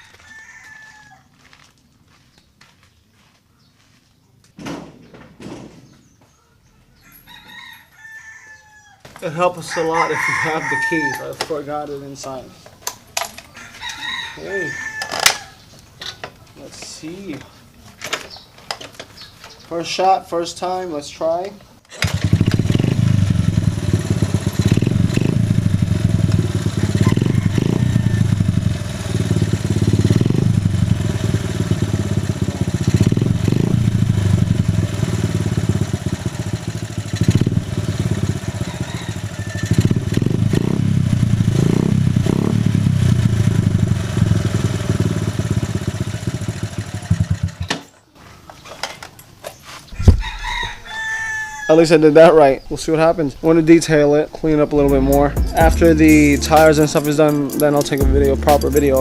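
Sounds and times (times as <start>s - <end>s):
motorcycle engine starting and running: 21.9s - 48.0s, 54.8s - 59.0s.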